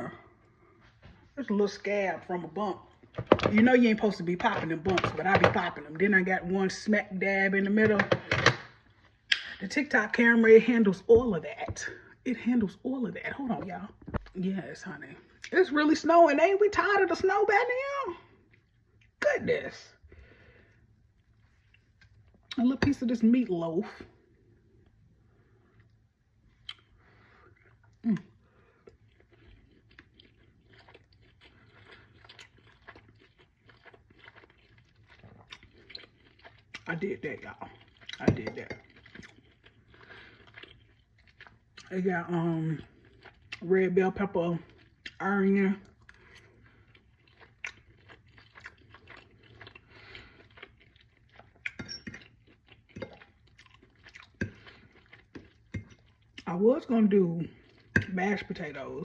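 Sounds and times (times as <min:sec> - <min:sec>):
mouth clicks and smacks: 0:09.3 - 0:09.6
person chewing: 0:24.3 - 0:41.9, 0:42.7 - 0:43.7, 0:45.8 - 0:56.5, 0:57.5 - 0:58.2.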